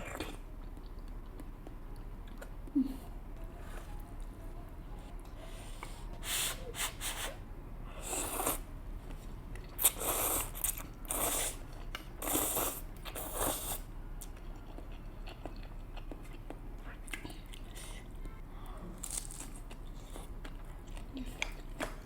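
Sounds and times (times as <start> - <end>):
slurping noodles: 8.0 - 8.6, 9.8 - 11.6
chewing: 9.6 - 18.4, 19.0 - 22.0.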